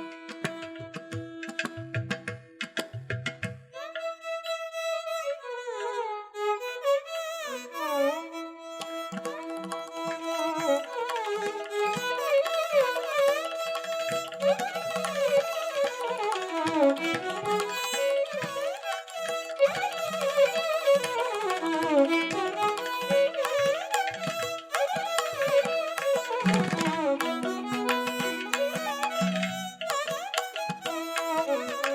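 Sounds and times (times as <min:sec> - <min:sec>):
gliding instrumental melody: 0:26.9 - 0:29.9.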